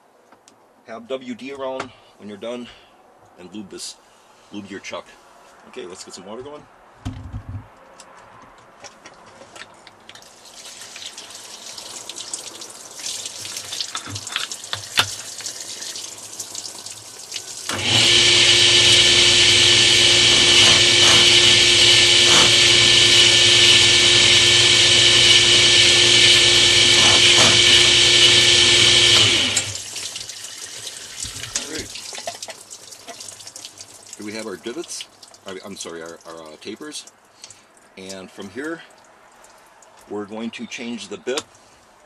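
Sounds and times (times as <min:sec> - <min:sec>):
water trickling: 0:10.0 - 0:17.8, 0:29.6 - 0:40.1
drill press motor running: 0:17.7 - 0:29.8
drill bit scraping stone tile: 0:19.2 - 0:24.4, 0:25.0 - 0:29.8.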